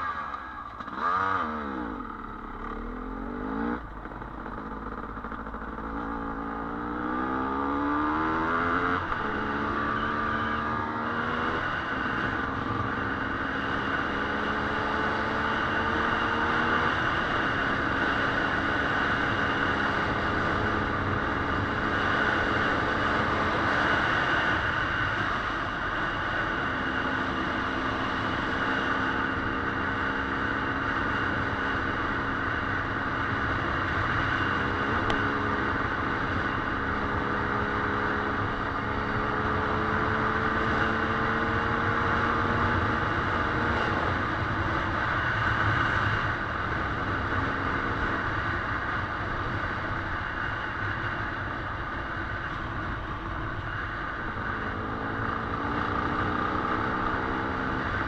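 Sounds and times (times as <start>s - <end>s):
dirt bike engine running: 0.6s - 26.7s.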